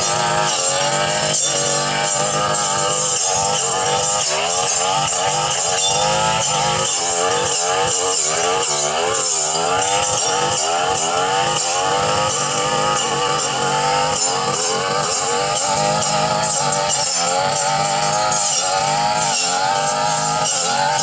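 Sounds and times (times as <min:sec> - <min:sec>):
brush cutter engine running: 0:00.0 - 0:21.0.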